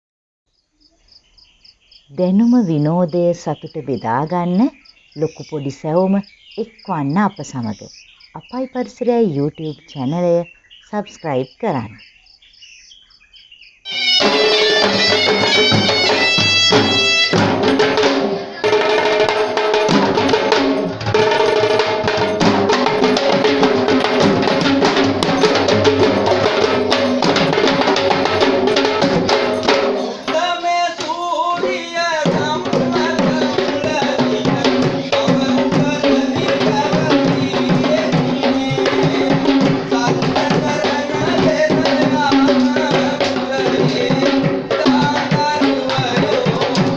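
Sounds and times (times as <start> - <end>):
drum ensemble playing fast rhythms: 13.9 - 46.9
held pitched tones: 13.9 - 46.9.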